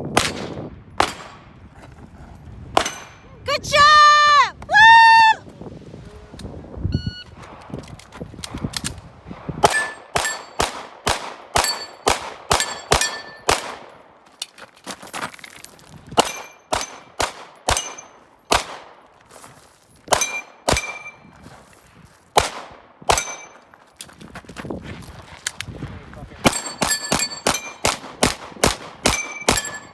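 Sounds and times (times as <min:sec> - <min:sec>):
bullets clanging on steel plate: 0:09.7 - 0:10.6, 0:11.6 - 0:13.5, 0:16.2 - 0:18.2, 0:23.1 - 0:23.7, 0:26.5 - 0:28.0, 0:29.1 - 0:29.9
rapid gunshots: 0:26.4 - 0:29.8.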